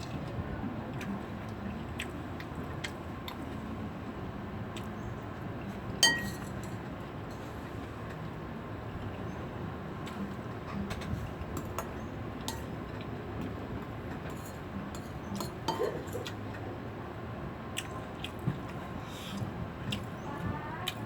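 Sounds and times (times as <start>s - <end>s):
low background hum: 0.0s - 21.0s
utensil clinking on dish: 6.0s - 6.7s.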